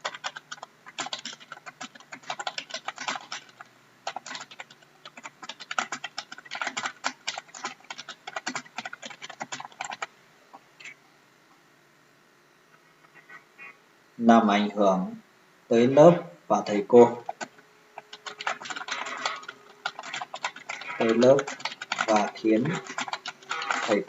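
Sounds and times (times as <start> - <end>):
keyboard typing: 0.0 - 10.1, 17.2 - 24.0.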